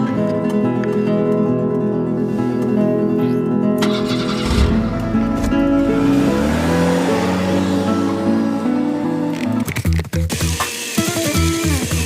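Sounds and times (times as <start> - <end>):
music with sustained notes: 0.0 - 10.0
rising low tone: 4.4 - 8.0.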